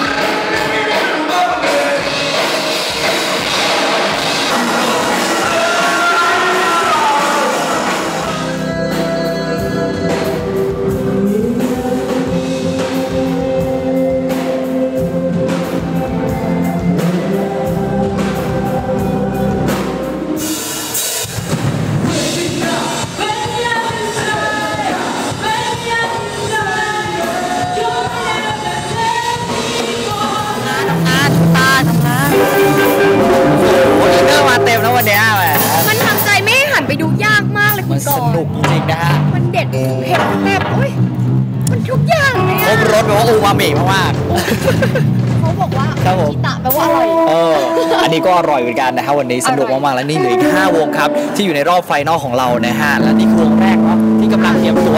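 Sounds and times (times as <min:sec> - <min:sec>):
person singing: 0:00.0 - 0:21.3, 0:22.0 - 0:36.5, 0:46.7 - 0:51.5, 0:52.4 - 0:54.9
drum kit: 0:00.0 - 0:54.9
live band music: 0:00.0 - 0:54.9.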